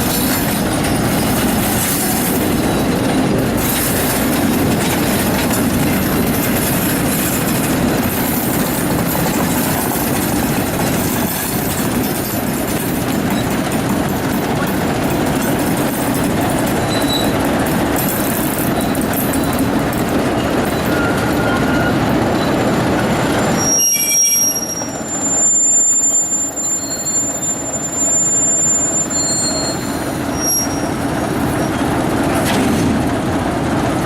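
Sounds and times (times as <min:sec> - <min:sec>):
train rolling on rails: 0:00.0 - 0:34.0
high-pitched wheel squeals: 0:16.8 - 0:17.4, 0:20.4 - 0:31.9.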